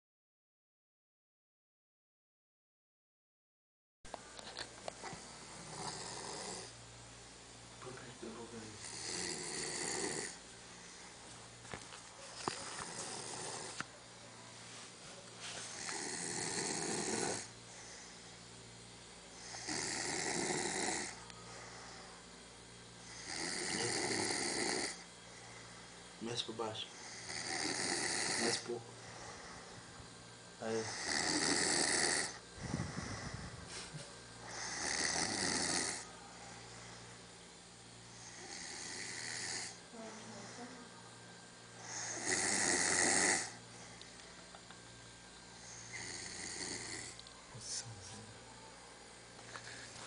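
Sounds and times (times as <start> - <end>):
person snoring: 5.0 - 6.8, 8.7 - 10.4, 12.8 - 13.8, 15.7 - 18.0, 19.4 - 21.2, 23.0 - 25.0, 27.0 - 29.6, 30.7 - 33.6, 34.4 - 36.7, 38.1 - 39.8, 41.8 - 43.6, 45.6 - 47.2
fluttering breath out: 32.6 - 34.0.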